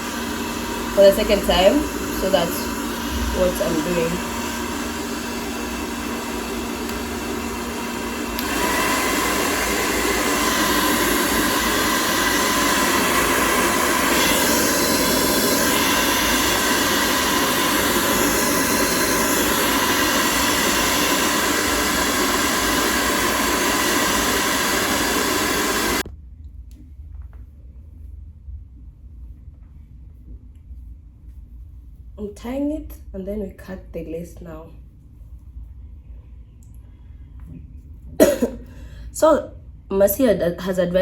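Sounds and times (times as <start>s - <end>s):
hair dryer blowing: 0.0s - 26.1s, 38.2s - 38.5s.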